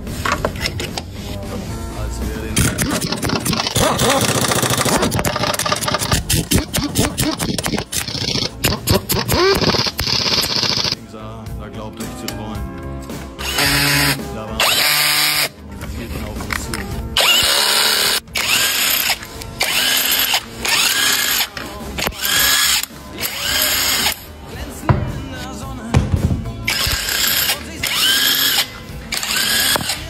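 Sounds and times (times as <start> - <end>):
background music: 0.0 - 30.0
power tool motor bursts: 2.6 - 11.0, 13.4 - 15.5, 17.2 - 21.5, 22.1 - 24.2, 26.7 - 30.0.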